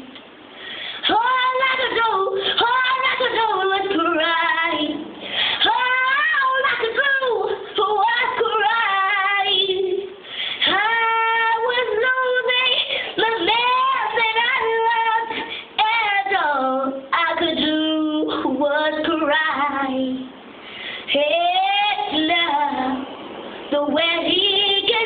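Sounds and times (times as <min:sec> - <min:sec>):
girl singing solo: 0:01.0 - 0:20.3.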